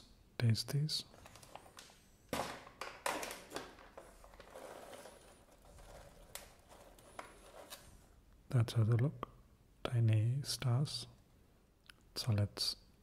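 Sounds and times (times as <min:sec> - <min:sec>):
crinkly packaging rustling: 0:01.1 - 0:08.1.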